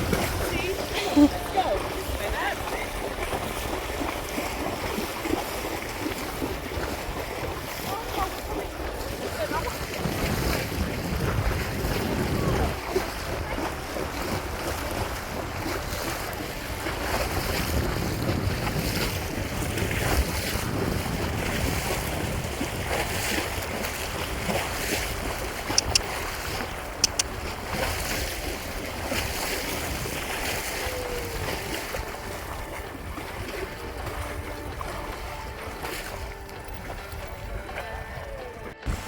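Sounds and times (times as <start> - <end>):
sea water splashing: 0.0 - 39.0
wind buffeting microphone: 0.0 - 39.0
sharp clicks: 25.8 - 26.1, 27.0 - 27.3.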